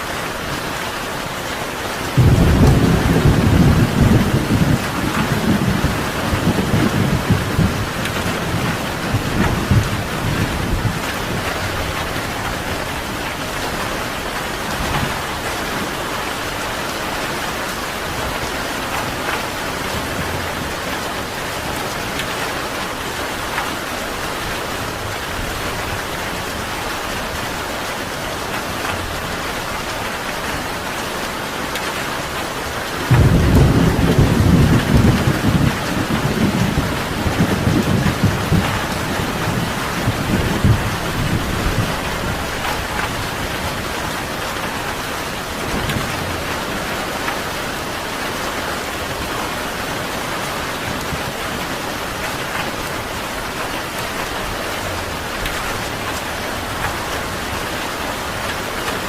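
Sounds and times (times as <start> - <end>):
steady rain falling: 0.0 - 59.0
deep rolling thunderclap: 2.2 - 13.6, 33.1 - 43.9.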